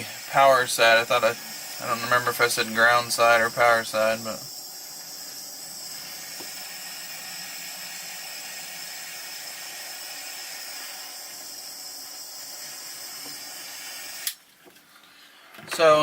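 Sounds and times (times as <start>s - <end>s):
faint high whine: 0.0s - 14.5s
heat gun hissing: 0.0s - 14.5s.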